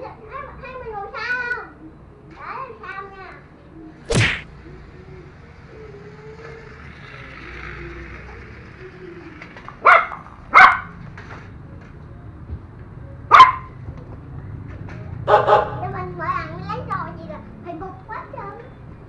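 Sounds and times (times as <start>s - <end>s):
dog barking: 9.8s - 11.0s, 13.3s - 13.8s, 15.3s - 15.9s.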